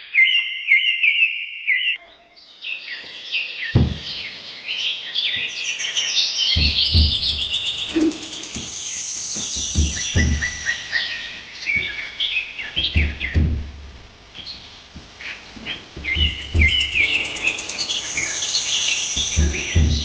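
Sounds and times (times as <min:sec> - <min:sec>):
birds chirping and trilling: 0:00.0 - 0:20.0
low dull thumps: 0:03.8 - 0:04.2, 0:06.6 - 0:20.0
steady high hiss: 0:03.8 - 0:20.0.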